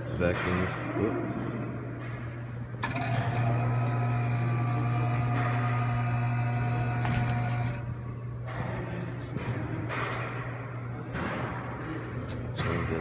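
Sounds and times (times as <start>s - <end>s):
machine motor humming: 2.5s - 11.1s.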